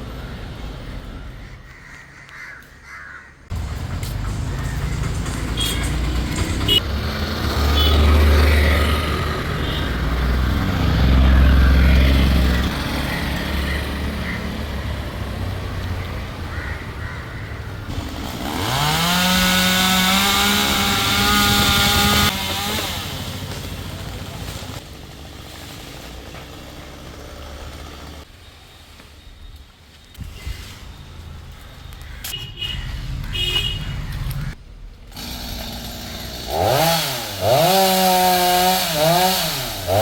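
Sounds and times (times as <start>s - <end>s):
chainsaw engine revving: 4.5s - 14.8s, 17.9s - 24.9s, 25.8s - 28.3s, 35.1s - 40.0s.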